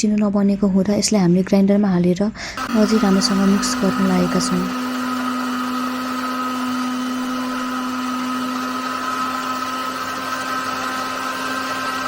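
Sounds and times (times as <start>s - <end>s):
electric mixer grinder running: 2.6s - 12.0s.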